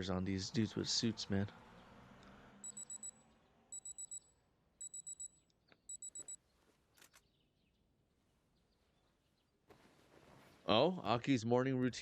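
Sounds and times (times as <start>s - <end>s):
digital alarm clock beeping: 2.6s - 6.4s.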